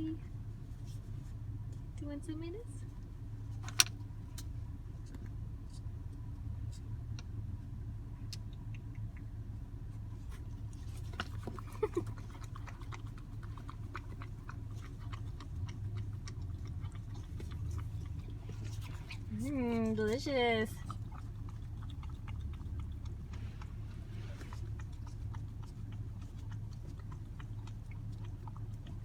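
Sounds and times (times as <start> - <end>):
low hum: 0.0 - 29.0
puppy licking and lapping: 8.1 - 29.0.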